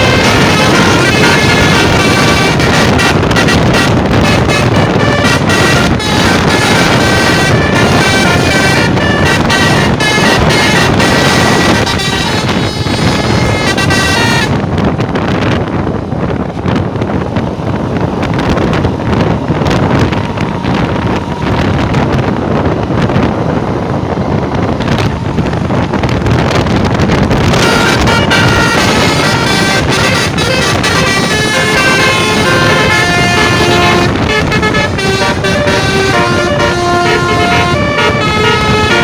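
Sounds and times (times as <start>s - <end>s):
musical bus horn melody: 0.0s - 15.5s, 25.6s - 39.0s
vehicle rushing noise: 0.0s - 39.0s
wind on microphone: 0.0s - 39.0s.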